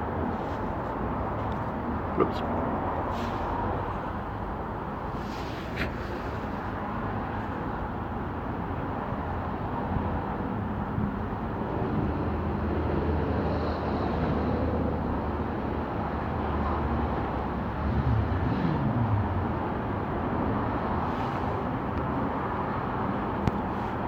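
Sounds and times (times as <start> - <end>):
vehicle engine rumble: 0.0 - 11.7
traffic noise: 0.0 - 24.0.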